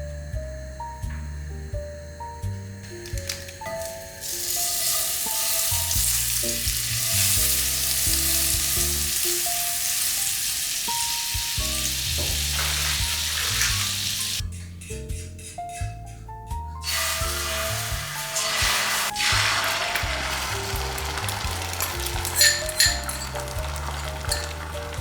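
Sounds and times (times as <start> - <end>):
soft background music: 0.0 - 25.0
food sizzling in a frying pan: 3.1 - 14.4, 16.8 - 25.0.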